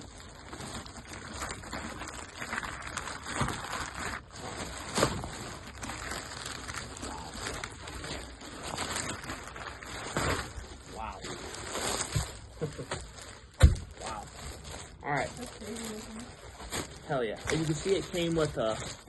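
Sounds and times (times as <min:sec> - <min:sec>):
packaging rustling and crinkling: 0:00.0 - 0:19.0.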